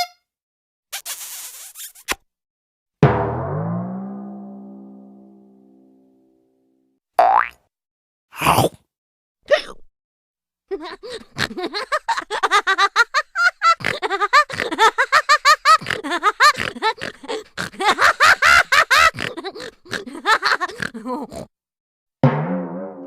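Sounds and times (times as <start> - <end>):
cartoon laughter: 10.7 - 21.4.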